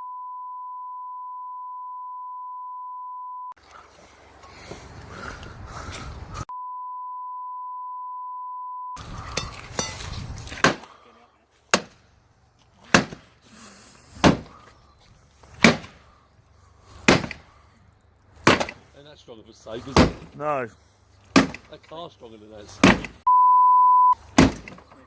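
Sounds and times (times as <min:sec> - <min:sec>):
censor bleep: 0:00.0 - 0:03.6, 0:06.5 - 0:09.0, 0:23.3 - 0:24.2
hammer striking metal safe: 0:21.4 - 0:21.7.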